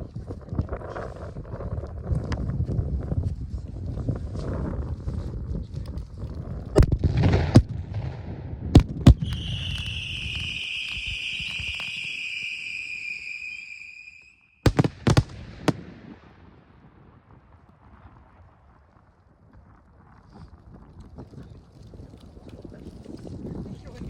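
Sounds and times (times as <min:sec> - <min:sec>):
fireworks bangs: 0:06.7 - 0:18.8
firework shrill whistle: 0:09.2 - 0:14.7.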